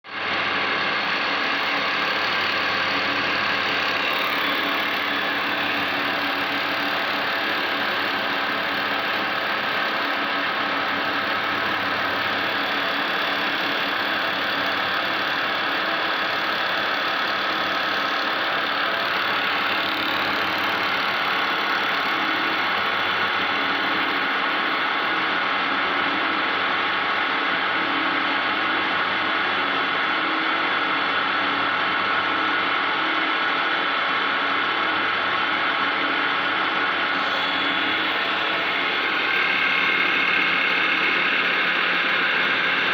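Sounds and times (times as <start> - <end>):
wood lathe running: 0.1 - 26.1, 35.0 - 42.9.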